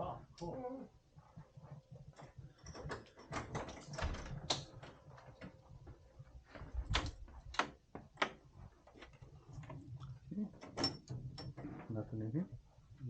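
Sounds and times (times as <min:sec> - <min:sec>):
door opening: 0:02.7 - 0:04.8.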